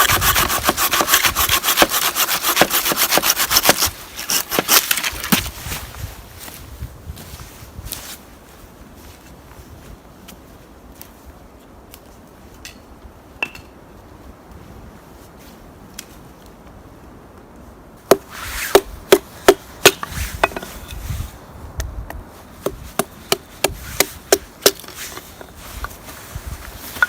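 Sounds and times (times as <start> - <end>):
wood chopping blows: 18.1 - 20.6.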